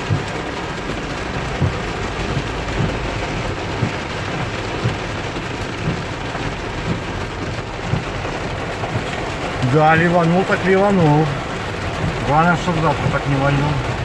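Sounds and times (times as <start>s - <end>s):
low thumps: 0.0s - 5.1s
heavy rain drumming on car: 0.0s - 14.0s.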